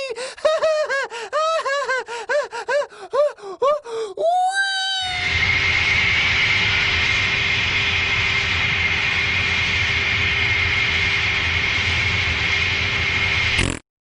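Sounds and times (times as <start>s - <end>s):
machine drone with high whine: 5.1s - 13.8s.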